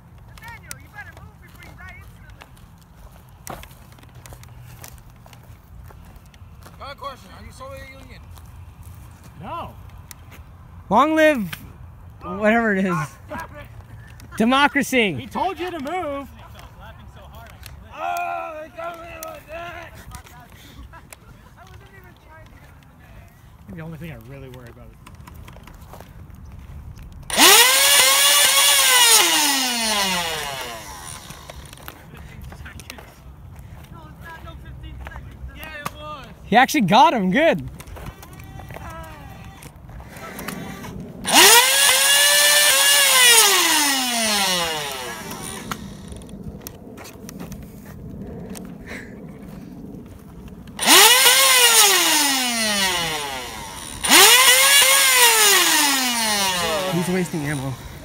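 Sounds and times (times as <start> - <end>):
electric motors whining: 27.3 - 32.0, 38.0 - 46.7, 50.7 - 58.0.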